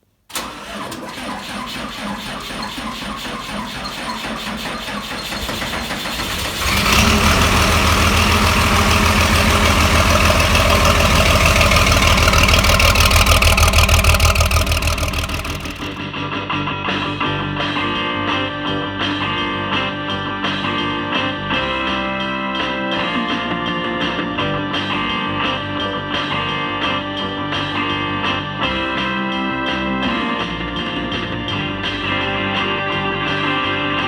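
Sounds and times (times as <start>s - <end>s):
old tractor engine running: 0.3s - 16.0s.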